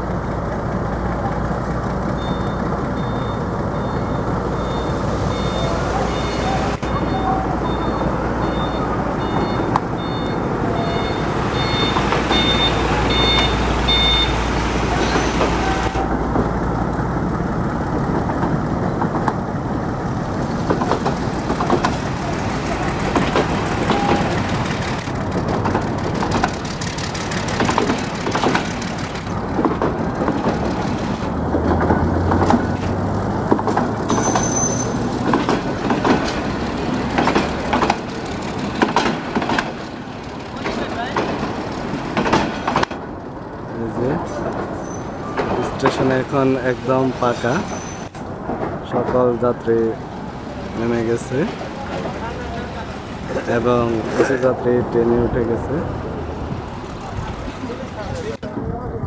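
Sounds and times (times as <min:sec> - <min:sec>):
train wheels clanking on rails: 0:00.0 - 0:58.5
train engine drone: 0:00.0 - 0:59.0
electronic beeping: 0:02.2 - 0:16.1.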